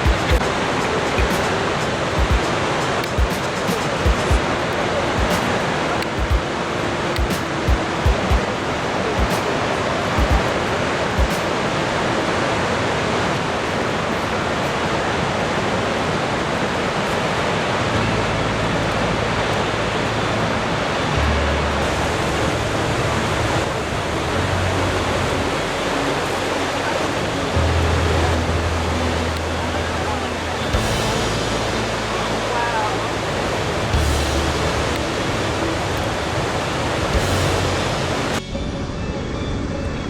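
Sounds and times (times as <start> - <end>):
large waterfall rushing: 0.0 - 40.0
low rumble: 18.0 - 39.1.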